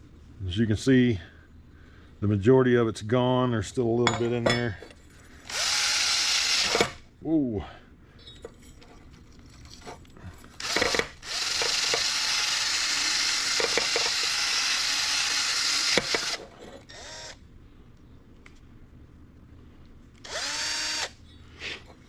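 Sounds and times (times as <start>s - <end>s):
electric drill with wire brush: 5.4s - 7.0s, 10.6s - 17.4s, 20.2s - 21.2s.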